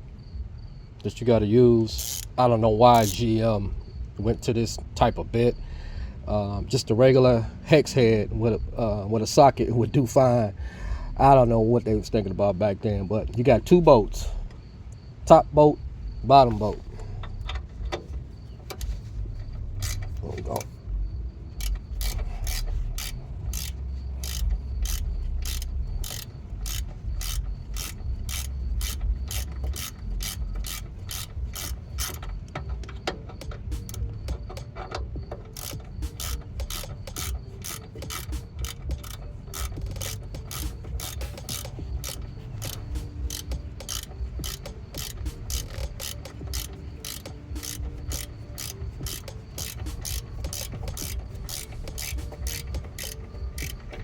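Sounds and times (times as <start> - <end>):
hand ratchet clicking: 1.8 - 6.0, 16.3 - 54.0.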